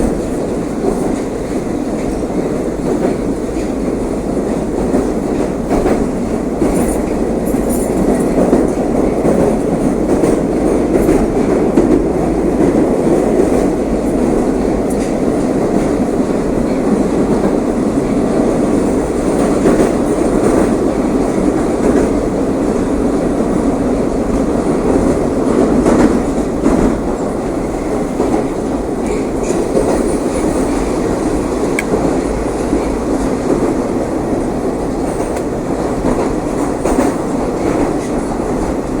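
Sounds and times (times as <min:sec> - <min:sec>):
rumble of wheels on rail: 0:00.0 - 0:39.0
clicks from rail joints: 0:31.6 - 0:33.8, 0:34.9 - 0:38.7.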